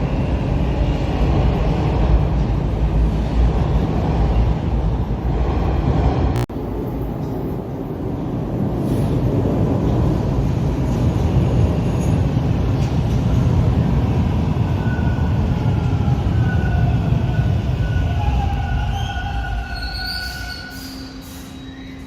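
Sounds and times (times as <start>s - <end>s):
subway train rumbling on track: 0.0s - 22.0s
faint wheel squeal: 16.4s - 22.0s.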